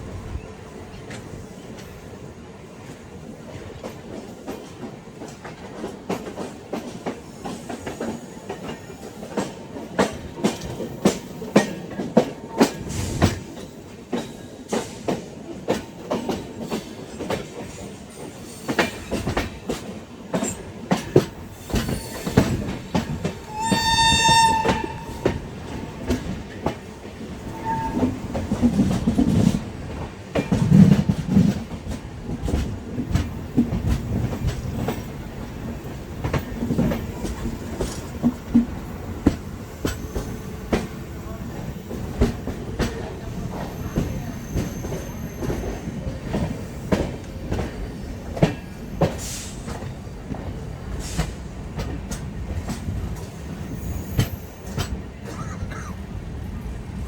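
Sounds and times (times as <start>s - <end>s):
train wheels clattering over rail joints: 3.5s - 55.4s
shrill locomotive horn: 23.4s - 25.4s, 27.4s - 28.4s.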